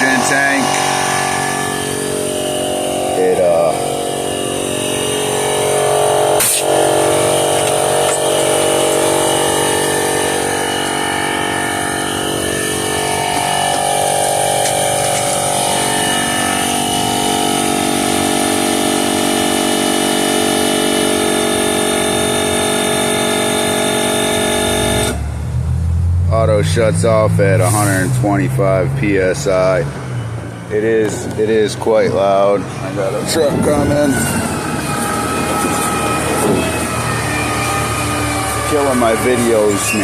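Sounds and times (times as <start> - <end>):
air compressor humming: 0.0 - 25.2, 32.2 - 40.0
sharp click: 6.4 - 6.7.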